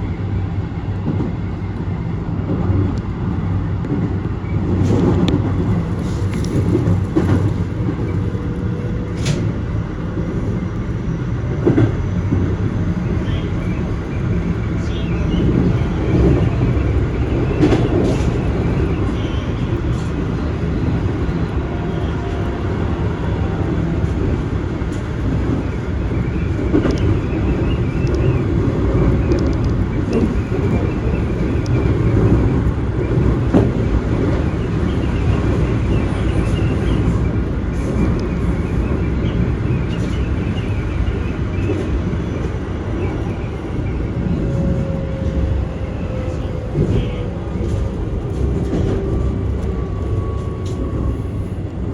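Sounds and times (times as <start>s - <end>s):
train rumbling on rails: 0.0s - 51.9s
sharp rail clicks: 15.4s - 35.7s.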